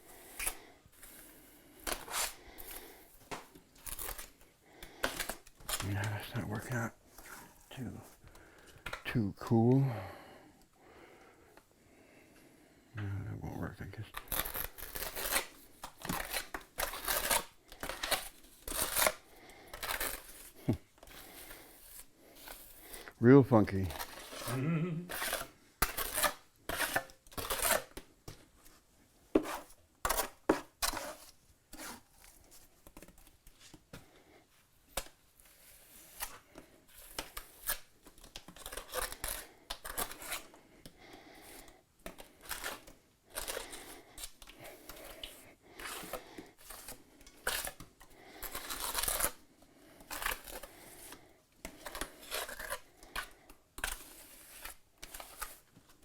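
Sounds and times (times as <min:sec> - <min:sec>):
trowel scraping mortar: 0:01.9 - 0:03.0, 0:03.8 - 0:04.4, 0:14.2 - 0:28.0, 0:29.4 - 0:32.5, 0:35.4 - 0:40.6, 0:41.4 - 0:49.4, 0:50.0 - 0:55.7.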